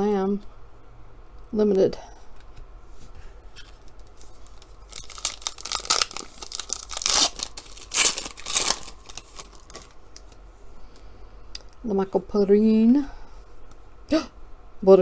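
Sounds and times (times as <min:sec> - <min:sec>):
wrapper tearing and crinkling: 0:04.1 - 0:10.3.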